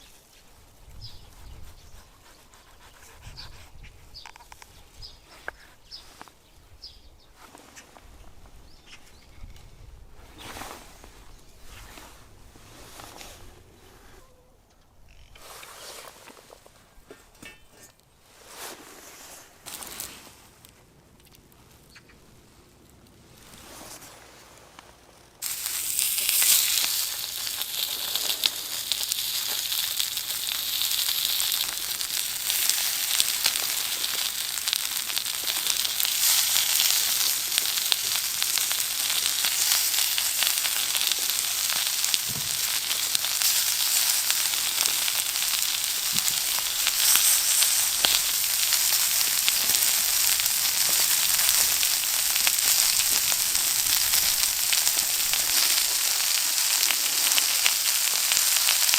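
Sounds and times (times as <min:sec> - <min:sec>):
meat sizzling over fire: 0:25.4 - 0:58.9.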